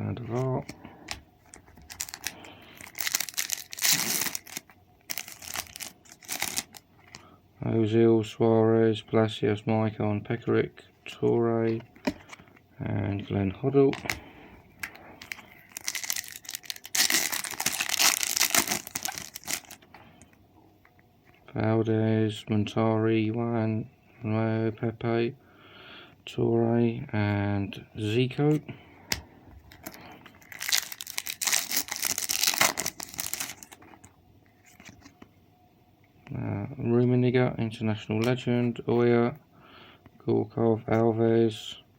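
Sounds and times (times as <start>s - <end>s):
wrapper torn open and crinkled: 1.9s - 6.8s, 15.2s - 19.8s, 29.8s - 33.8s.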